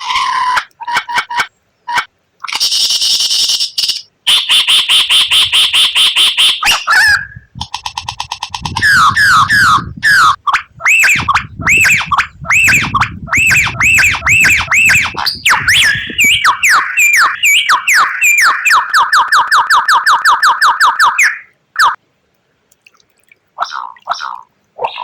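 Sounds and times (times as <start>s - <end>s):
songbird singing: 0.0s - 22.0s, 23.6s - 25.0s.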